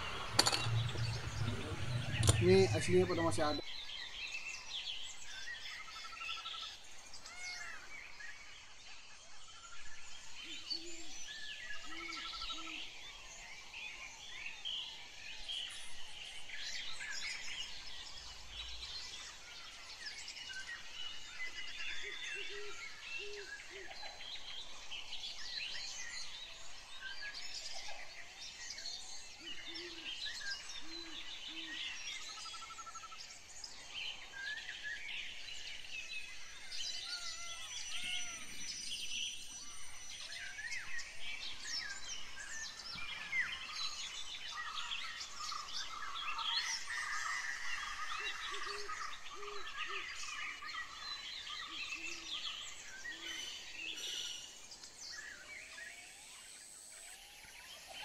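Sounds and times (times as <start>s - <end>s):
low bird call: 0.0s - 3.6s
small birds chirping and singing: 0.0s - 58.0s.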